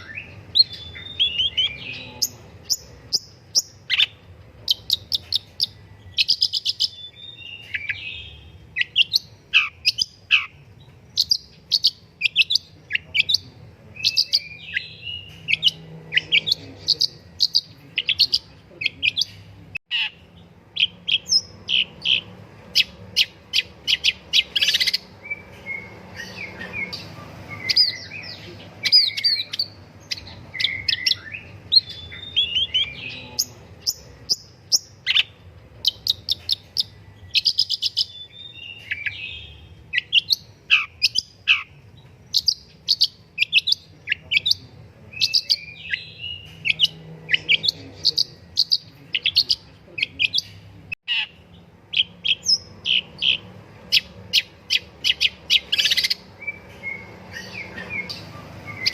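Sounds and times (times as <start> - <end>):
bird singing chattering song: 0.0 - 58.9.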